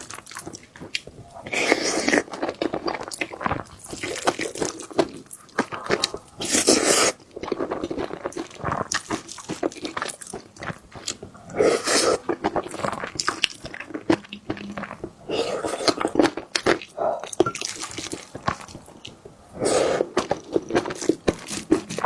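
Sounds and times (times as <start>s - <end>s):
chewing and crunching food: 0.0s - 22.0s
wet mouth sounds: 11.4s - 22.0s.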